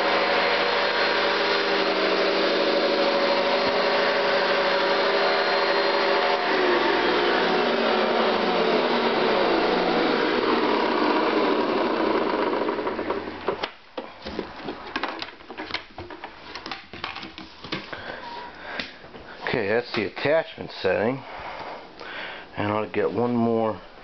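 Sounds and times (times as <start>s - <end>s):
vacuum motor winding down: 0.0s - 13.6s
upright vacuum cleaner running: 0.0s - 13.7s.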